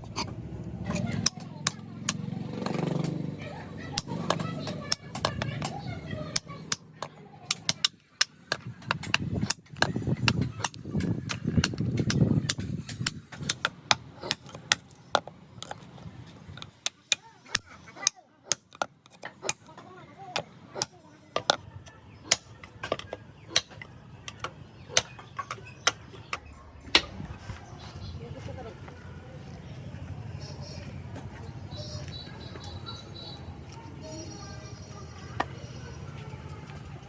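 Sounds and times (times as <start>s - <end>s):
hammer striking wood: 0.9s - 14.8s.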